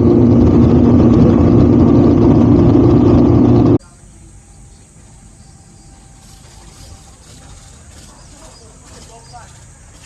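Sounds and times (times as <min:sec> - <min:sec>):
motorcycle engine running: 0:00.0 - 0:03.8.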